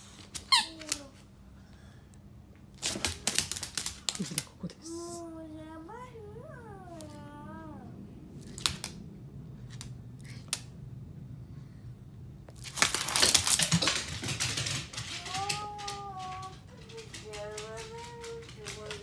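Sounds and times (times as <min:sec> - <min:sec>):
loud rustling and crinkling: 0:12.5 - 0:19.0.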